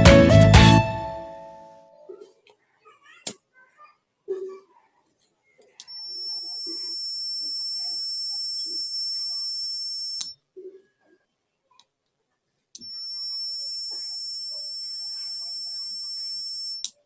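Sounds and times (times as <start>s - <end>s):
high-pitched alarm buzzer: 5.9s - 10.3s, 12.8s - 16.9s.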